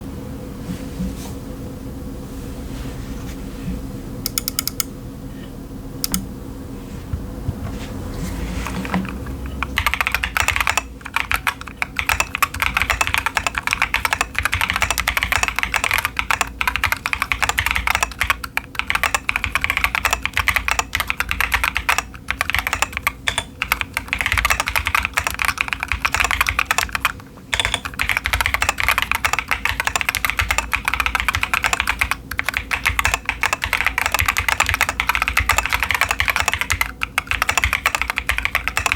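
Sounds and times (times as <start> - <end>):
low steady hum: 0.0 - 38.9
scattered clicks: 4.3 - 4.9, 6.0 - 6.3, 8.6 - 38.9
typing on mechanical keyboard: 4.3 - 4.9, 8.6 - 38.9.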